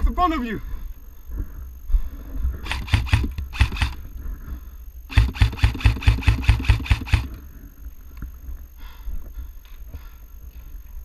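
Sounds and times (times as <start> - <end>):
airsoft gun firing rapid shots: 2.6 - 4.1, 5.1 - 7.4.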